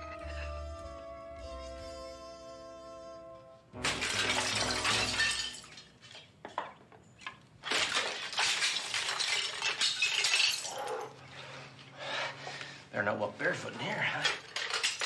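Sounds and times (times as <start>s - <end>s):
clinks of falling glass pieces: 3.8s - 6.8s, 7.7s - 11.1s, 14.0s - 15.0s
glass shattering: 3.8s - 6.8s, 7.6s - 10.9s, 14.2s - 15.0s.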